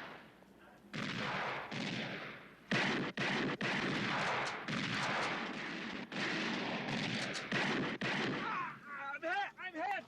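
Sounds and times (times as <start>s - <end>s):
rapid gunfire: 1.0s - 8.7s.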